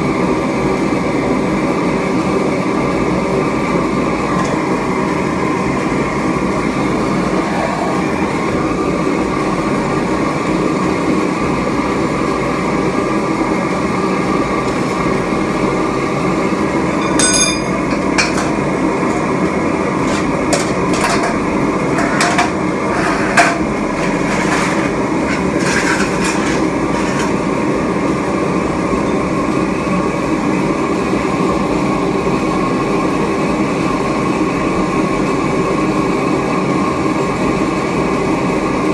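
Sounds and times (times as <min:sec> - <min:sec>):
furnace rushing drone: 0:02.4 - 0:30.1
metallic clinks and knocks: 0:17.0 - 0:27.4.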